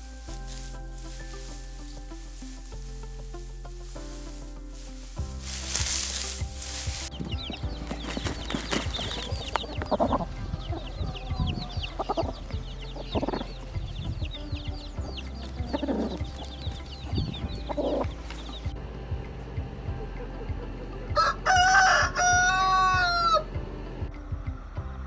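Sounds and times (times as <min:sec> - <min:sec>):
chicks peeping: 0:04.9 - 0:18.8, 0:19.8 - 0:23.4
chicken clucking: 0:05.5 - 0:18.7.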